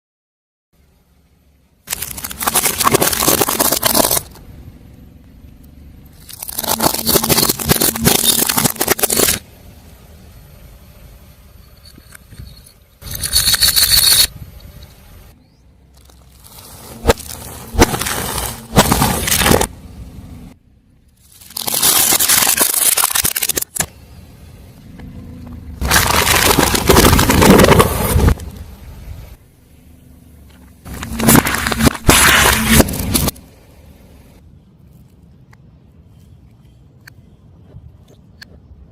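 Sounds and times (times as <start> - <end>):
low hum: 0.8 - 38.9
car tyre crushing crunchy objects: 1.8 - 10.2, 15.9 - 24.2, 24.8 - 29.4, 30.4 - 33.6.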